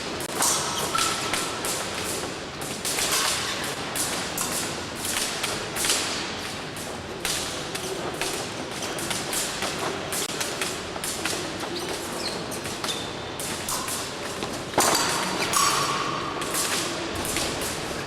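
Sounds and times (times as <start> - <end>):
fencing blades clashing: 0.3 - 6.2, 13.5 - 18.0.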